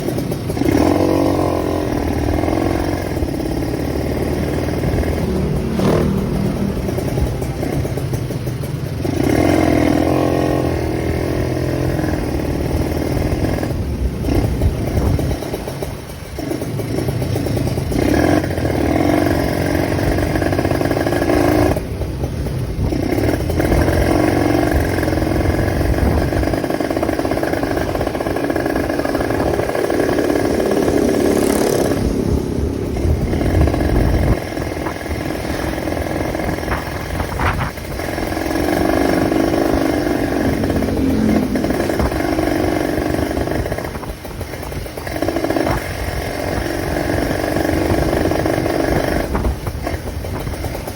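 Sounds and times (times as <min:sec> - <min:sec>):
raspy carburetor intake growl: 0:00.0 - 0:08.4, 0:22.8 - 0:50.8
motorcycle engine revving: 0:00.0 - 0:50.9.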